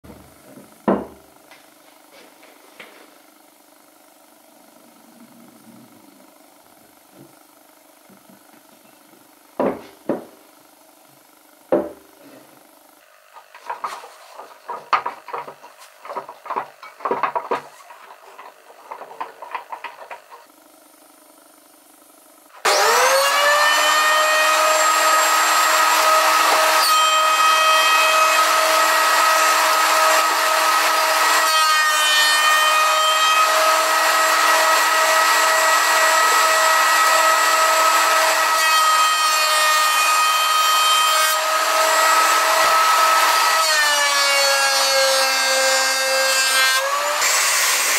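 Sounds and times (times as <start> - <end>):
wood and tools knocking: 0.0 - 1.6, 9.6 - 10.4, 11.7 - 12.4, 13.4 - 20.5
power tool cutting wood: 13.0 - 20.5, 22.5 - 47.9.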